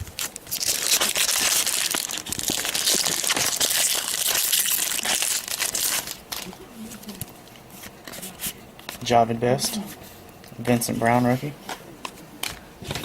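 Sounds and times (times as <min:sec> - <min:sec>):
plastic wrapper crinkling: 0:00.0 - 0:08.5.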